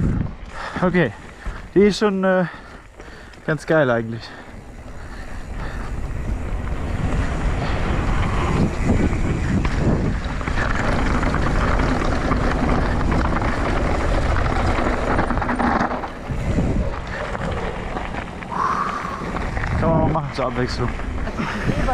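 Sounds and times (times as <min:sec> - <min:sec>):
wind rushing over microphone: 0:00.0 - 0:01.9, 0:03.5 - 0:21.9
bike tyres rolling on dirt trail: 0:00.0 - 0:21.9
bike knocks and rattles: 0:06.1 - 0:18.5.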